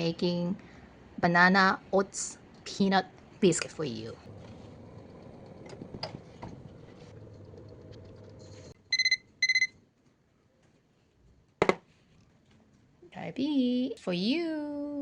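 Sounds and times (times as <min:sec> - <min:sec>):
cooking appliance humming: 0:03.8 - 0:09.7
appliance beeps: 0:08.4 - 0:09.8.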